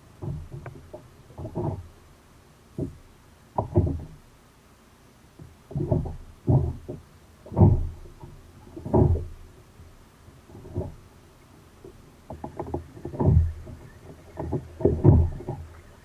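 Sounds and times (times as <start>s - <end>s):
hollow thumps on kayak: 0.2s - 1.9s, 2.7s - 4.2s, 5.4s - 9.5s, 11.8s - 16.0s.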